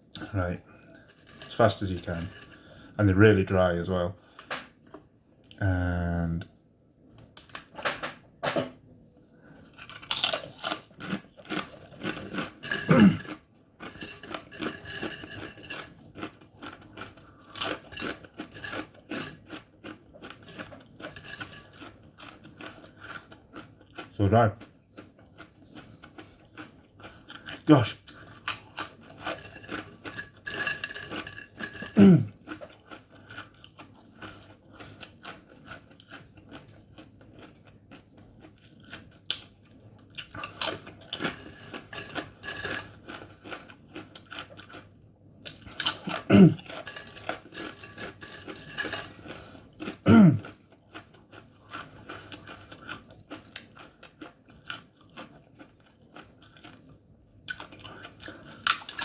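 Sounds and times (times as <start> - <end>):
crunching corn chips: 9.6 - 44.8, 45.5 - 59.0
person hiccuping: 12.9 - 13.2, 32.0 - 32.3, 46.2 - 46.6, 50.0 - 50.4.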